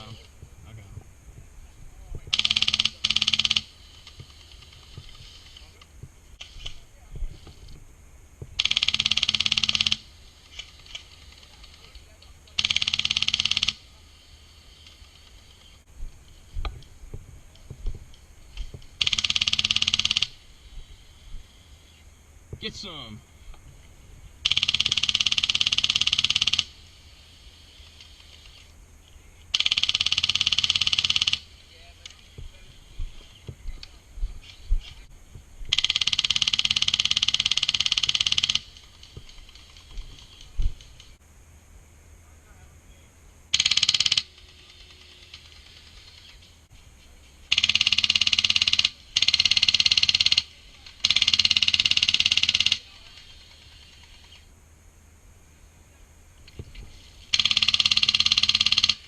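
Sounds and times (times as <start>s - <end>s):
airsoft machine gun firing: 2.3s - 5.5s, 8.6s - 11.9s, 12.5s - 13.9s, 19.0s - 20.4s, 24.4s - 26.8s, 29.5s - 31.5s, 35.7s - 40.3s, 43.5s - 46.3s, 47.5s - 54.4s, 57.3s - 59.0s.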